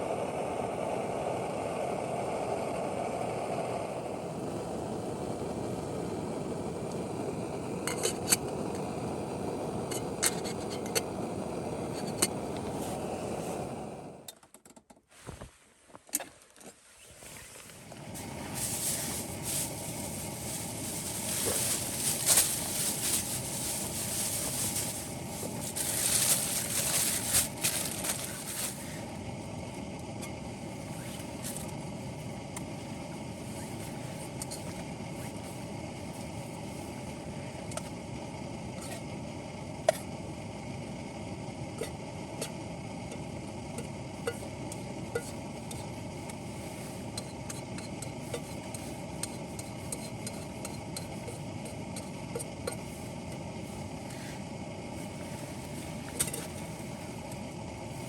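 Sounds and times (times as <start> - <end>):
rustling and crunching: 15.2 - 29.0.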